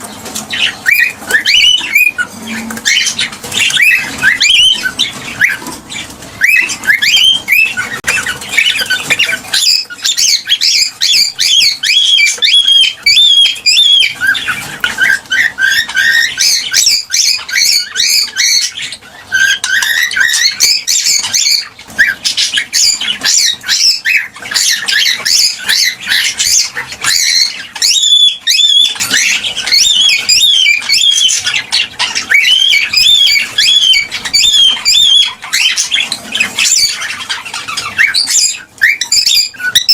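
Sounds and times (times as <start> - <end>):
cockatiel chirping and warbling: 0.0 - 39.9.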